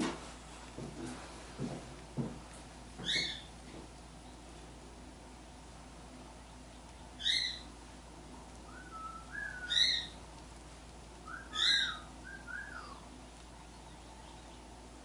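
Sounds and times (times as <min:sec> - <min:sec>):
loud bird calls: 0:03.0 - 0:03.5, 0:07.1 - 0:07.7, 0:08.8 - 0:10.2, 0:11.3 - 0:13.1
soft wavering bird whistles: 0:07.2 - 0:07.7, 0:08.7 - 0:10.2, 0:11.2 - 0:13.1.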